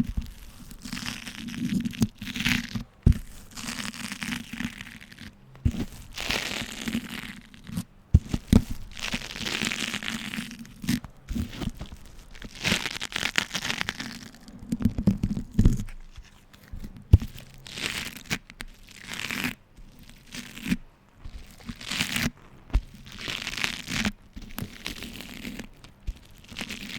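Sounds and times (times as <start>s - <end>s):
waxed cloth crinkling: 0.0s - 20.6s.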